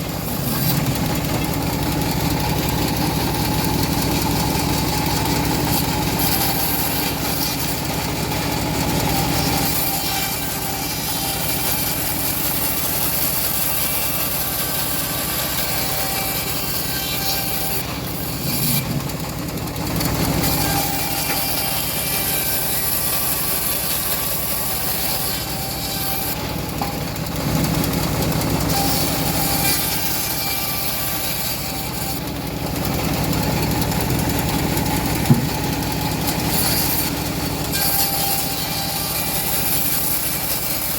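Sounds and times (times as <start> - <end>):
bandsaw mill cutting log: 0.0 - 40.9
sharp knock: 35.2 - 35.8.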